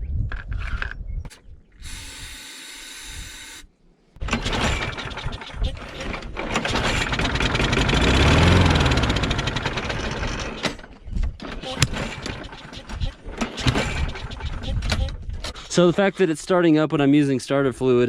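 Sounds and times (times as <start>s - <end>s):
aerosol can hissing: 1.3s - 3.6s
lawnmower engine running: 1.3s - 14.7s.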